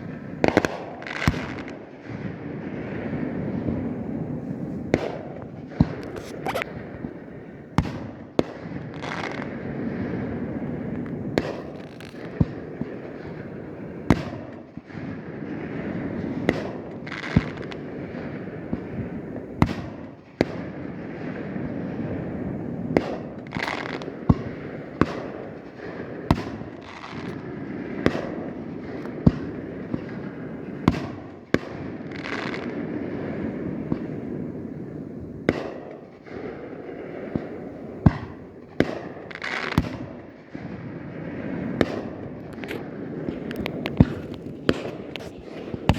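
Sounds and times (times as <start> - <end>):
fireworks bangs: 0.0 - 45.9
fireworks crackling: 0.0 - 45.9
rumble of shell bursts: 22.1 - 26.6, 41.5 - 45.9.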